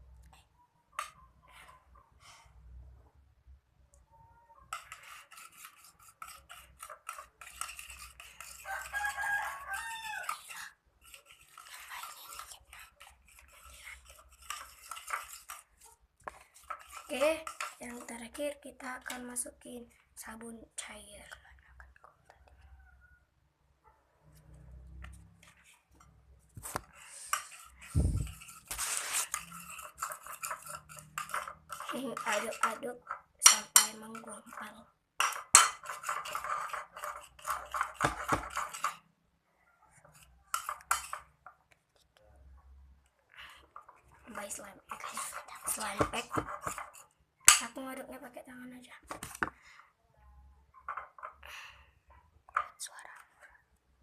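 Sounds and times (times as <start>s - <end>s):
stirrer tapping and scraping container: 1.0s - 1.7s, 4.6s - 20.4s, 24.3s - 39.2s, 39.9s - 41.8s, 43.1s - 48.3s, 49.0s - 49.7s, 50.7s - 51.4s, 52.4s - 53.4s
slime being stirred: 4.6s - 19.6s, 25.4s - 39.1s, 39.9s - 41.8s, 43.4s - 48.2s.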